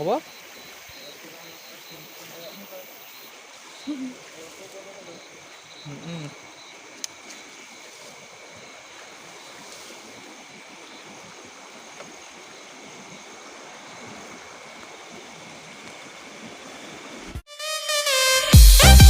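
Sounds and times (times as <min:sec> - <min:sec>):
high insect trilling: 0:00.0 - 0:07.5
steady hiss: 0:00.0 - 0:10.9.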